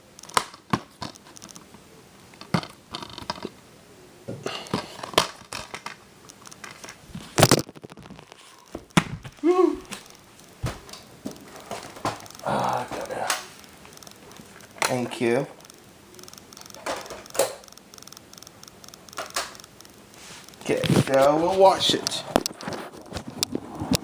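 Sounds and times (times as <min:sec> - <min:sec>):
plastic wrap tearing and crinkling: 0:04.8 - 0:15.0.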